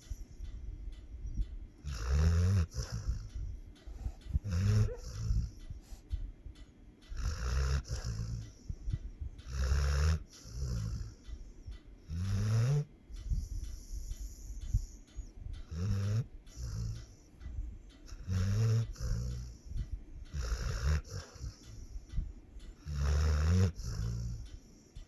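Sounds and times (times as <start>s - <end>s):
dog snoring: 0.0s - 25.0s.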